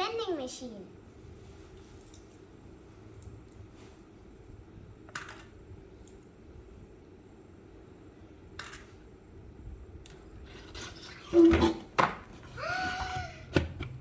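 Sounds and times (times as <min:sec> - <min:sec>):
child's voice: 0:00.0 - 0:01.0.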